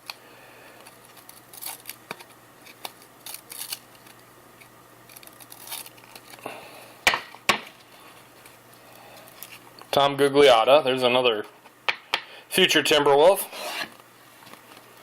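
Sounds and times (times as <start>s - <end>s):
trading cards rustling: 0.8s - 4.2s, 5.0s - 6.5s.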